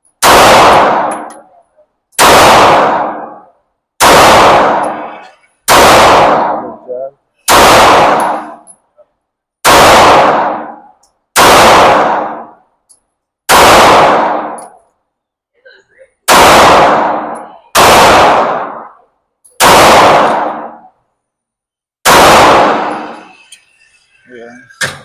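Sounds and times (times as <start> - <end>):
pistol shots echoing indoors: 0.2 - 1.6, 2.2 - 6.8, 7.5 - 8.7, 9.6 - 12.7, 13.5 - 14.8, 16.3 - 21.0, 22.0 - 23.4.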